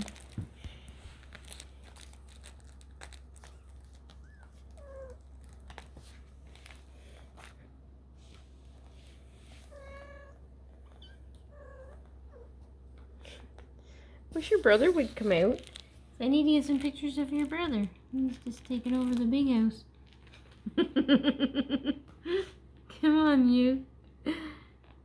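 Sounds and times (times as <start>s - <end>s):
kittens mewing: 3.4s - 5.8s, 9.7s - 13.5s.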